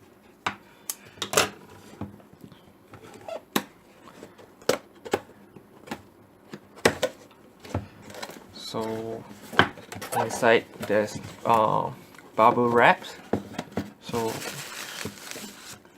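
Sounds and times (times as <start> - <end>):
cardboard box being handled: 14.1 - 15.8.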